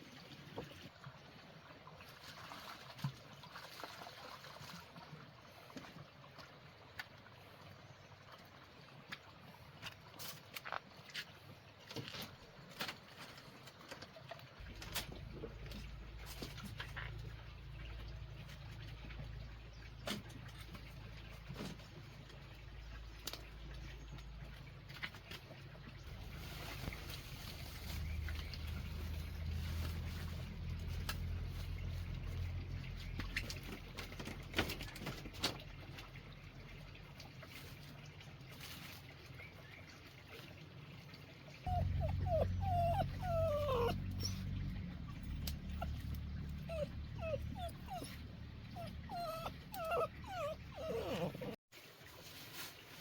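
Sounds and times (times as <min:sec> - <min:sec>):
puppy whimpering: 0:41.7 - 0:51.6.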